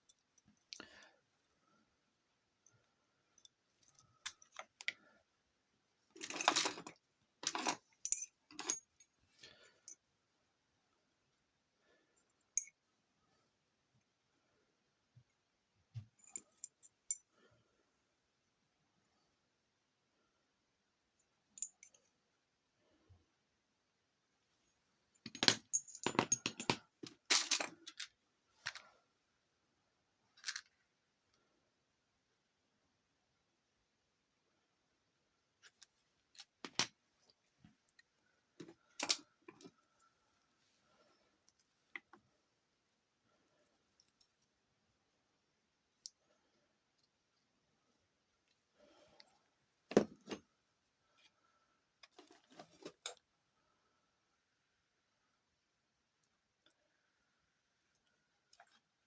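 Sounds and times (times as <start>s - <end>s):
light metallic clinks and rattles: 2.6s - 5.1s, 6.2s - 10.0s, 12.4s - 12.8s, 16.0s - 17.4s, 21.6s - 22.1s, 25.2s - 28.9s, 38.6s - 40.1s.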